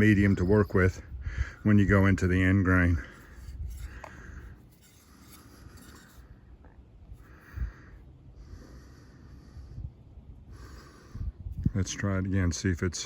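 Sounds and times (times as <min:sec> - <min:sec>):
person breathing: 0:01.1 - 0:01.7, 0:03.0 - 0:06.5, 0:07.1 - 0:11.6.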